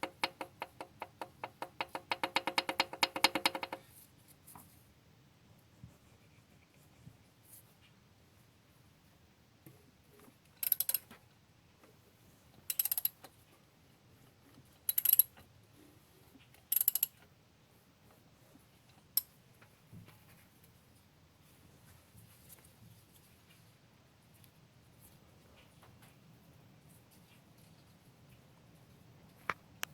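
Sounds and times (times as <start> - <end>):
rapid metallic clicking: 0.0 - 3.8
metal engine parts clicking: 10.6 - 11.0, 12.7 - 13.2, 14.9 - 15.3, 16.7 - 17.2.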